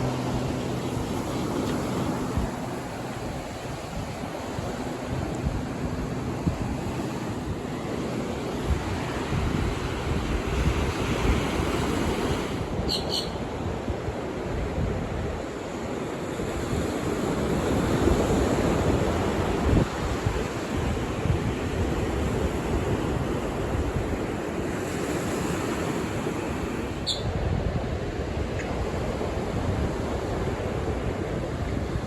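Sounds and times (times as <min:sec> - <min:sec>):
ocean surf washing onto beach: 0:00.0 - 0:32.0
wind on microphone: 0:00.0 - 0:32.0
short high double chirp: 0:12.9 - 0:13.4.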